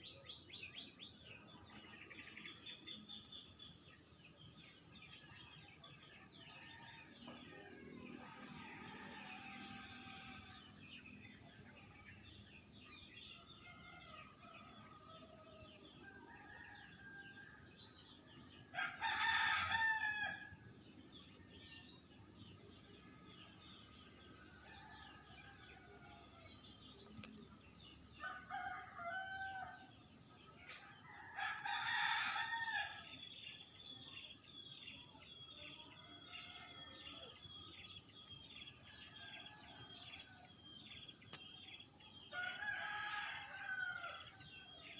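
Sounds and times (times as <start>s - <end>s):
high insect drone: 0.0s - 44.9s
rooster crowing: 8.3s - 10.6s, 28.2s - 29.8s, 31.1s - 33.0s, 42.3s - 44.3s.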